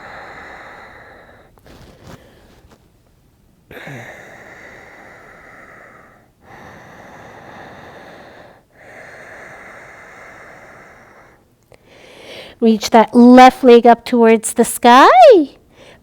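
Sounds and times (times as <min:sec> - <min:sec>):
person breathing deeply: 0:03.7 - 0:12.6.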